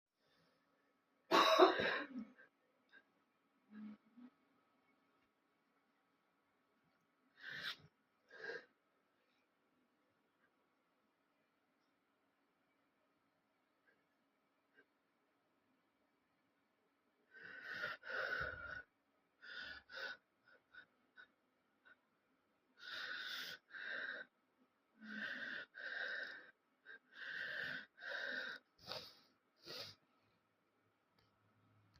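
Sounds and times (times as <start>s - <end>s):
wheezy rasping breathing: 7.4s - 8.7s, 17.3s - 22.0s, 22.8s - 24.3s, 25.0s - 30.0s.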